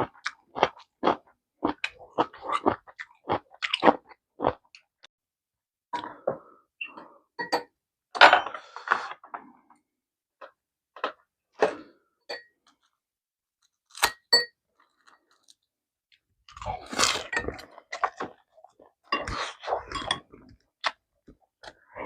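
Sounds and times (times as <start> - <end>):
person chewing food: 0.0 - 5.1, 16.4 - 21.9.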